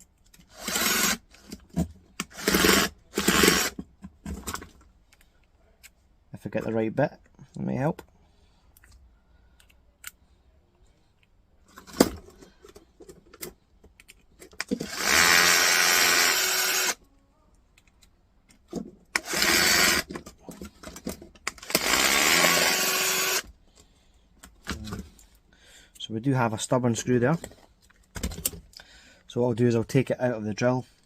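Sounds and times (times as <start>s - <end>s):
electric drill driving screwdriver bit: 0.5s - 1.3s, 2.2s - 3.8s, 14.6s - 17.0s, 19.2s - 20.1s, 21.5s - 23.5s.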